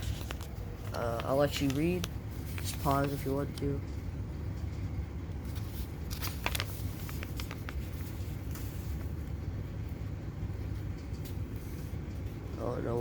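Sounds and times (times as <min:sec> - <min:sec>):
paper rustling: 0:00.0 - 0:03.8, 0:05.4 - 0:09.2.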